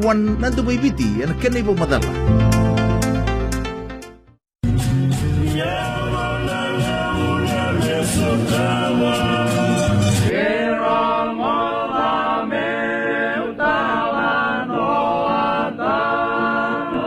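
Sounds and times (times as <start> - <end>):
music with drums and bass: 4.6 - 10.3
voices singing without instruments: 5.0 - 17.0.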